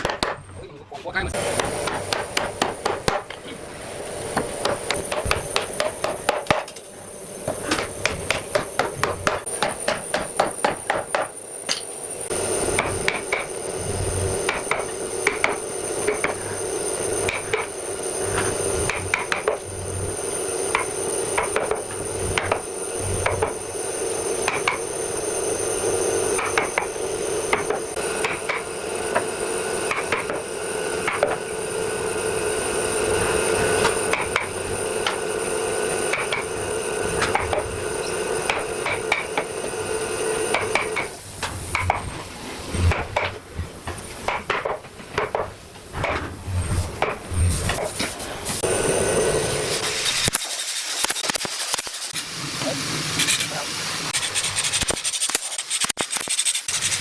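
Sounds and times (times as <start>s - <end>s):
hammering on wood: 0.0s - 0.4s, 1.4s - 3.4s, 4.3s - 6.8s, 7.5s - 11.4s, 14.5s - 16.4s, 18.9s - 19.6s, 27.5s - 28.7s, 29.9s - 30.4s, 31.0s - 31.4s, 44.3s - 46.2s
steady machine hum: 0.0s - 50.4s.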